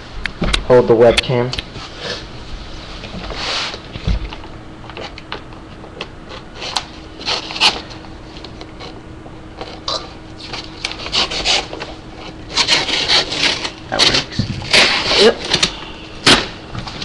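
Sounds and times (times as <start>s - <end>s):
faint steady hum: 0.0s - 17.0s
knife scraping packing tape: 6.3s - 7.9s, 10.4s - 15.8s.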